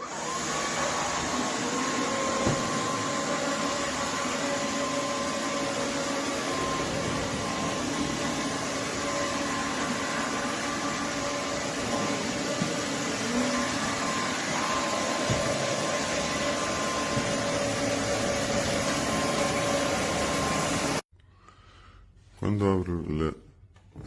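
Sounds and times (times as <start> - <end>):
vacuum mop motor whine: 0.0 - 21.0.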